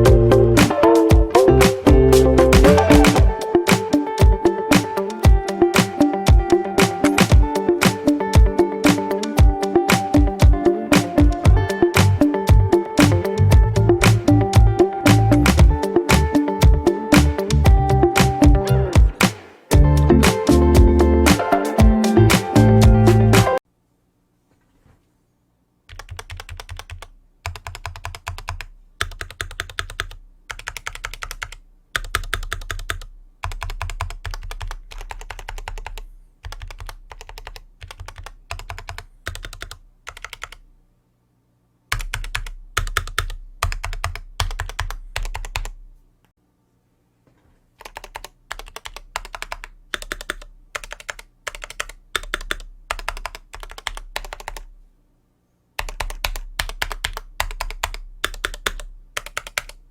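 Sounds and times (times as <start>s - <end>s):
mechanical keyboard typing: 25.9s - 40.6s, 41.9s - 45.8s, 47.8s - 54.7s, 55.8s - 59.8s.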